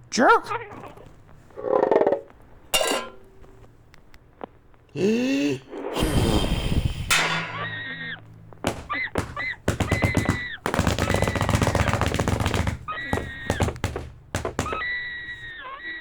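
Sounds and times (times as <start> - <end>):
clattering crashes: 1.1 - 3.7, 7.1 - 15.5
fast rattling cracks: 6.3 - 15.5.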